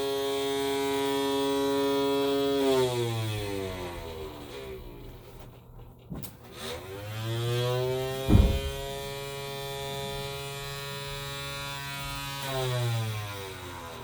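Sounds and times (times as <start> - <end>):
short thump: 8.3 - 9.1.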